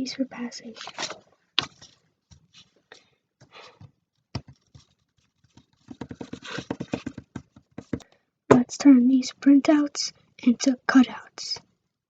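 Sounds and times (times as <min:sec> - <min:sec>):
paper rustling: 0:00.7 - 0:02.9, 0:04.4 - 0:08.0
cardboard knocks: 0:05.6 - 0:08.0.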